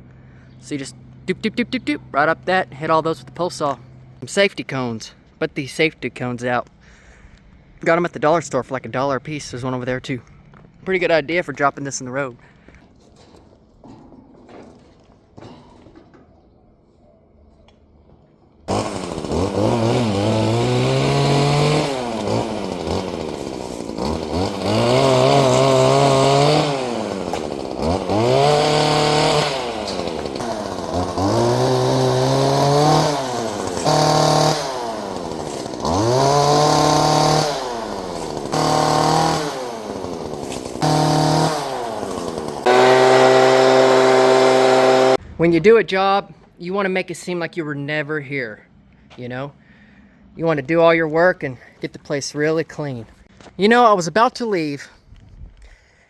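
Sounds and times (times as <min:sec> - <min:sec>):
chainsaw revving: 0:18.7 - 0:45.2.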